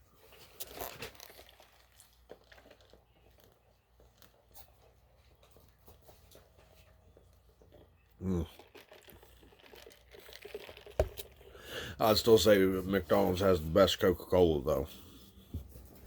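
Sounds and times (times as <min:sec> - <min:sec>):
paper wrappers crinkling and tearing: 0:00.3 - 0:04.5.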